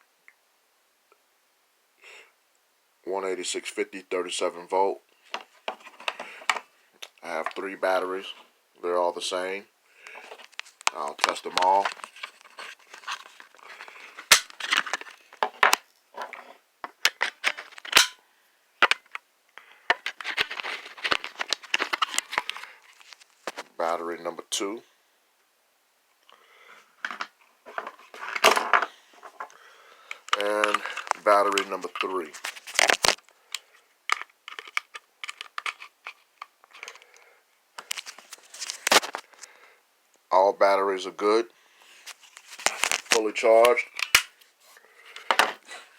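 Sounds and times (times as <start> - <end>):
batteries and gear clicking: 32.8 - 37.2.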